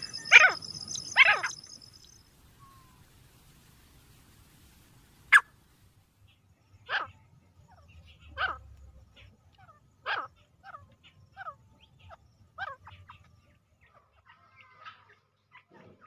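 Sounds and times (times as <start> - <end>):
francolin harsh calls: 0.0 - 3.0.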